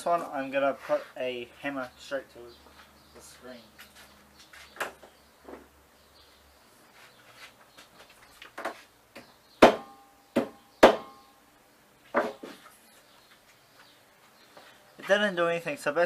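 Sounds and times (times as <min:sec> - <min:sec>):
hammer knocking on phone: 0:09.6 - 0:11.2.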